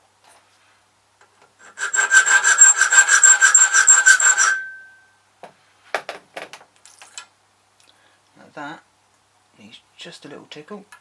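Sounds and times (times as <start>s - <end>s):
hand file filing metal key: 1.6s - 5.0s.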